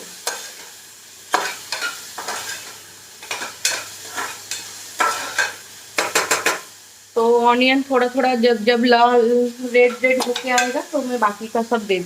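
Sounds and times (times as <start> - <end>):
onions sizzling in oil: 0.0 - 12.0
spatula scraping a pan: 0.2 - 6.7.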